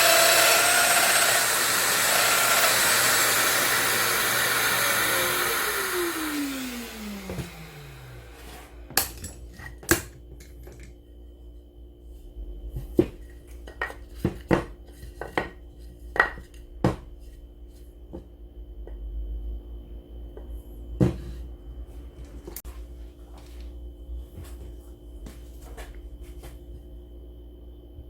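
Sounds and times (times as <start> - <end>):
faint steady hum: 6.7 - 28.0.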